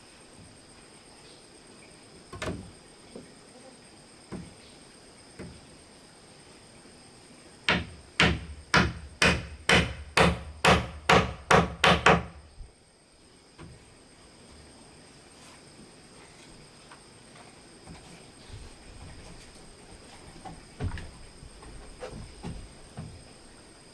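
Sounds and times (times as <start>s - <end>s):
sharp blows on wood: 7.7s - 12.4s.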